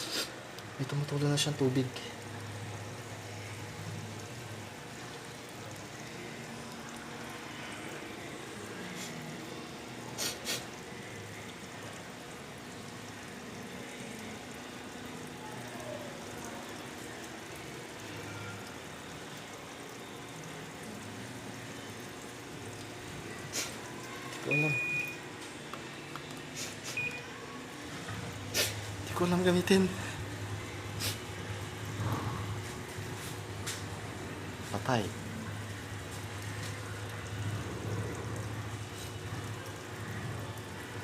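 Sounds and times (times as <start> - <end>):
water trickling into washing machine: 0.0 - 41.0.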